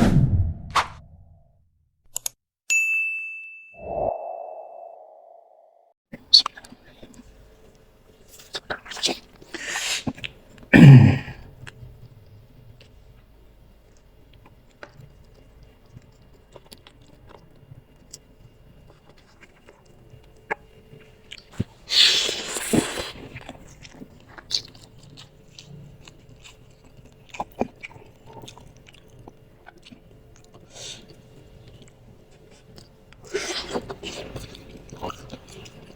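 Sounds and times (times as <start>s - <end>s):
loud noodle slurp: 21.9s - 23.3s
wet chewing: 22.6s - 35.9s.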